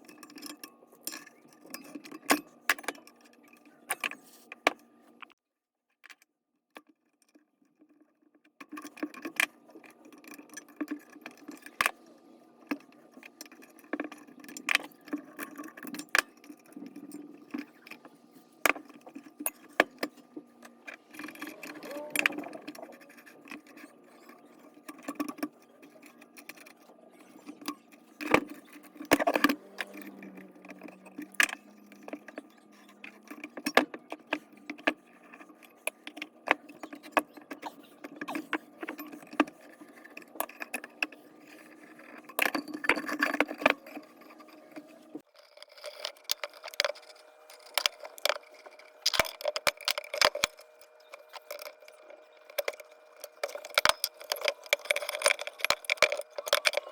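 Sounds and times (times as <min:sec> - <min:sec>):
faint steady hum: 0:09.4 - 0:56.9
metal parts clinking and clattering: 0:36.6 - 0:56.9.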